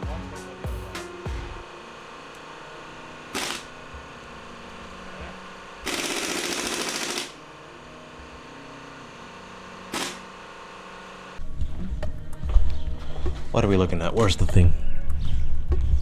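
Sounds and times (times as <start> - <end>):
power tool rattling: 1.8 - 7.7, 9.2 - 11.4.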